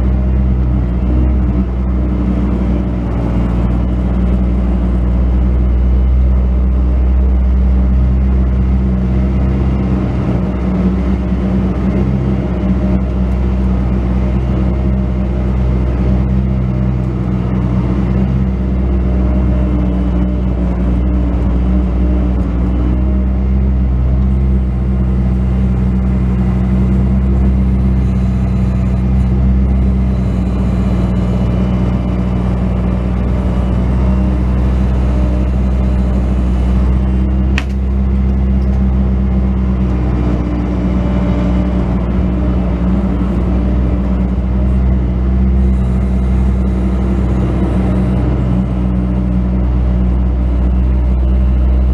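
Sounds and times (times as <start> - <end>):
diesel engine running: 0.0 - 51.9
sharp click: 37.6 - 37.8.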